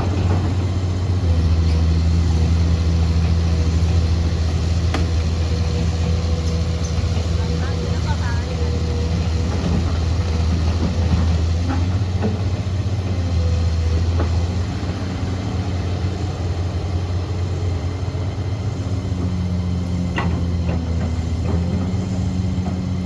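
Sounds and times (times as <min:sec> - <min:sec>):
diesel engine droning: 0:00.0 - 0:23.0.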